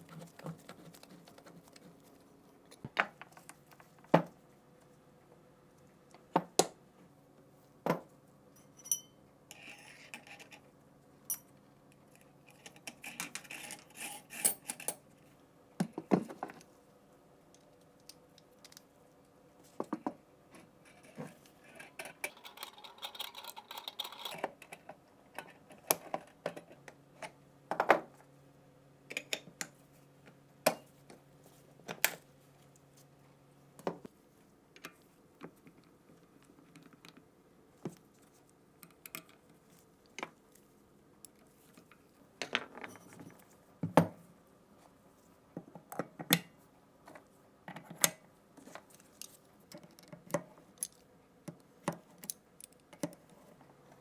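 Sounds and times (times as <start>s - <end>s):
metal parts clicking and knocking: 21.6s - 24.8s.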